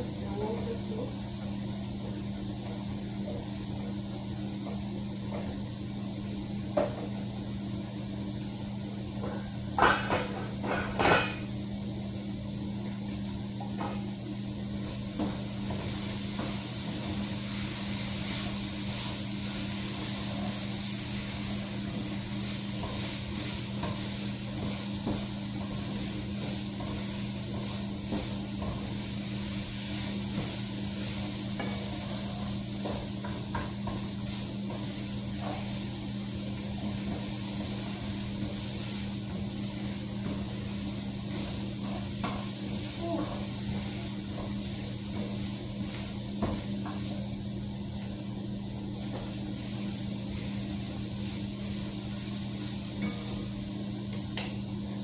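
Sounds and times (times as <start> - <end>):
sizzling hiss: 15.1 - 54.7.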